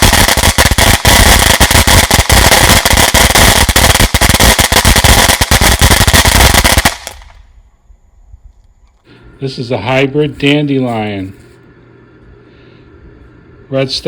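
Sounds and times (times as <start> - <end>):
firework hissing and crackling: 0.0 - 7.6.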